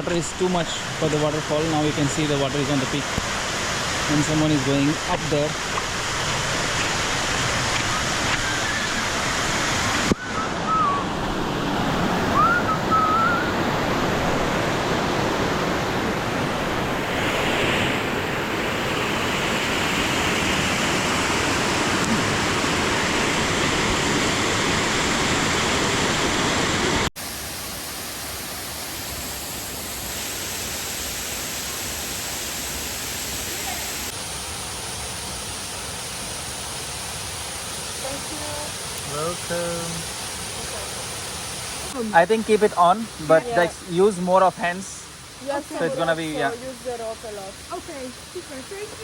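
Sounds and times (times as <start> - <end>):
waterfall rushing: 0.0 - 49.0
short rising whistles: 7.9 - 9.2, 10.1 - 11.4, 12.3 - 13.6.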